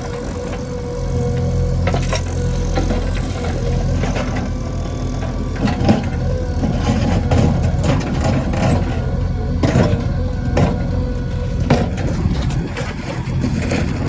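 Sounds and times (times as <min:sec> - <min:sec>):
diesel engine running: 0:00.0 - 0:14.0
knocks and rattles: 0:11.6 - 0:14.0.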